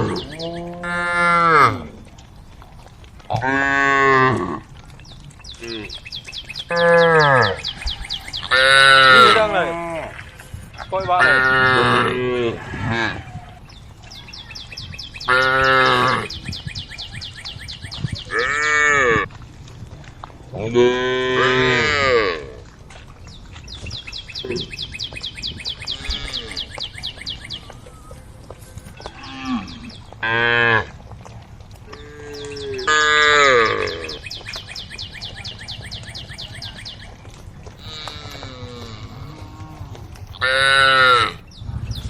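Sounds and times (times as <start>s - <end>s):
cattle mooing: 0.0s - 2.1s, 6.6s - 7.8s, 8.4s - 10.3s, 11.0s - 13.6s, 15.2s - 16.4s, 18.3s - 19.3s, 20.6s - 22.6s, 25.8s - 26.8s, 29.0s - 31.0s, 31.9s - 34.2s, 37.8s - 41.4s.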